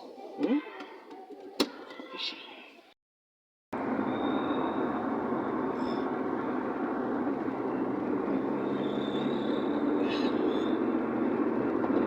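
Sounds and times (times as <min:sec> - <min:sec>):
road and tyre noise: 0:03.8 - 0:12.0.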